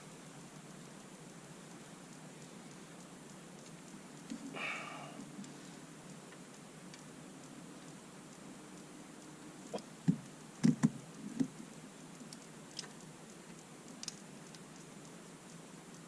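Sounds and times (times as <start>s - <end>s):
faint ticks: 0.0s - 16.0s
light knocks and clicks: 10.0s - 11.6s.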